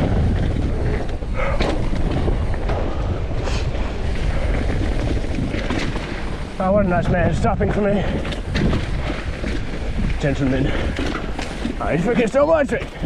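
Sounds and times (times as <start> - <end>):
bike rattling: 0.0 - 13.0
bike tyres rumbling on dirt: 0.0 - 13.0
wind buffeting microphone: 0.0 - 13.0.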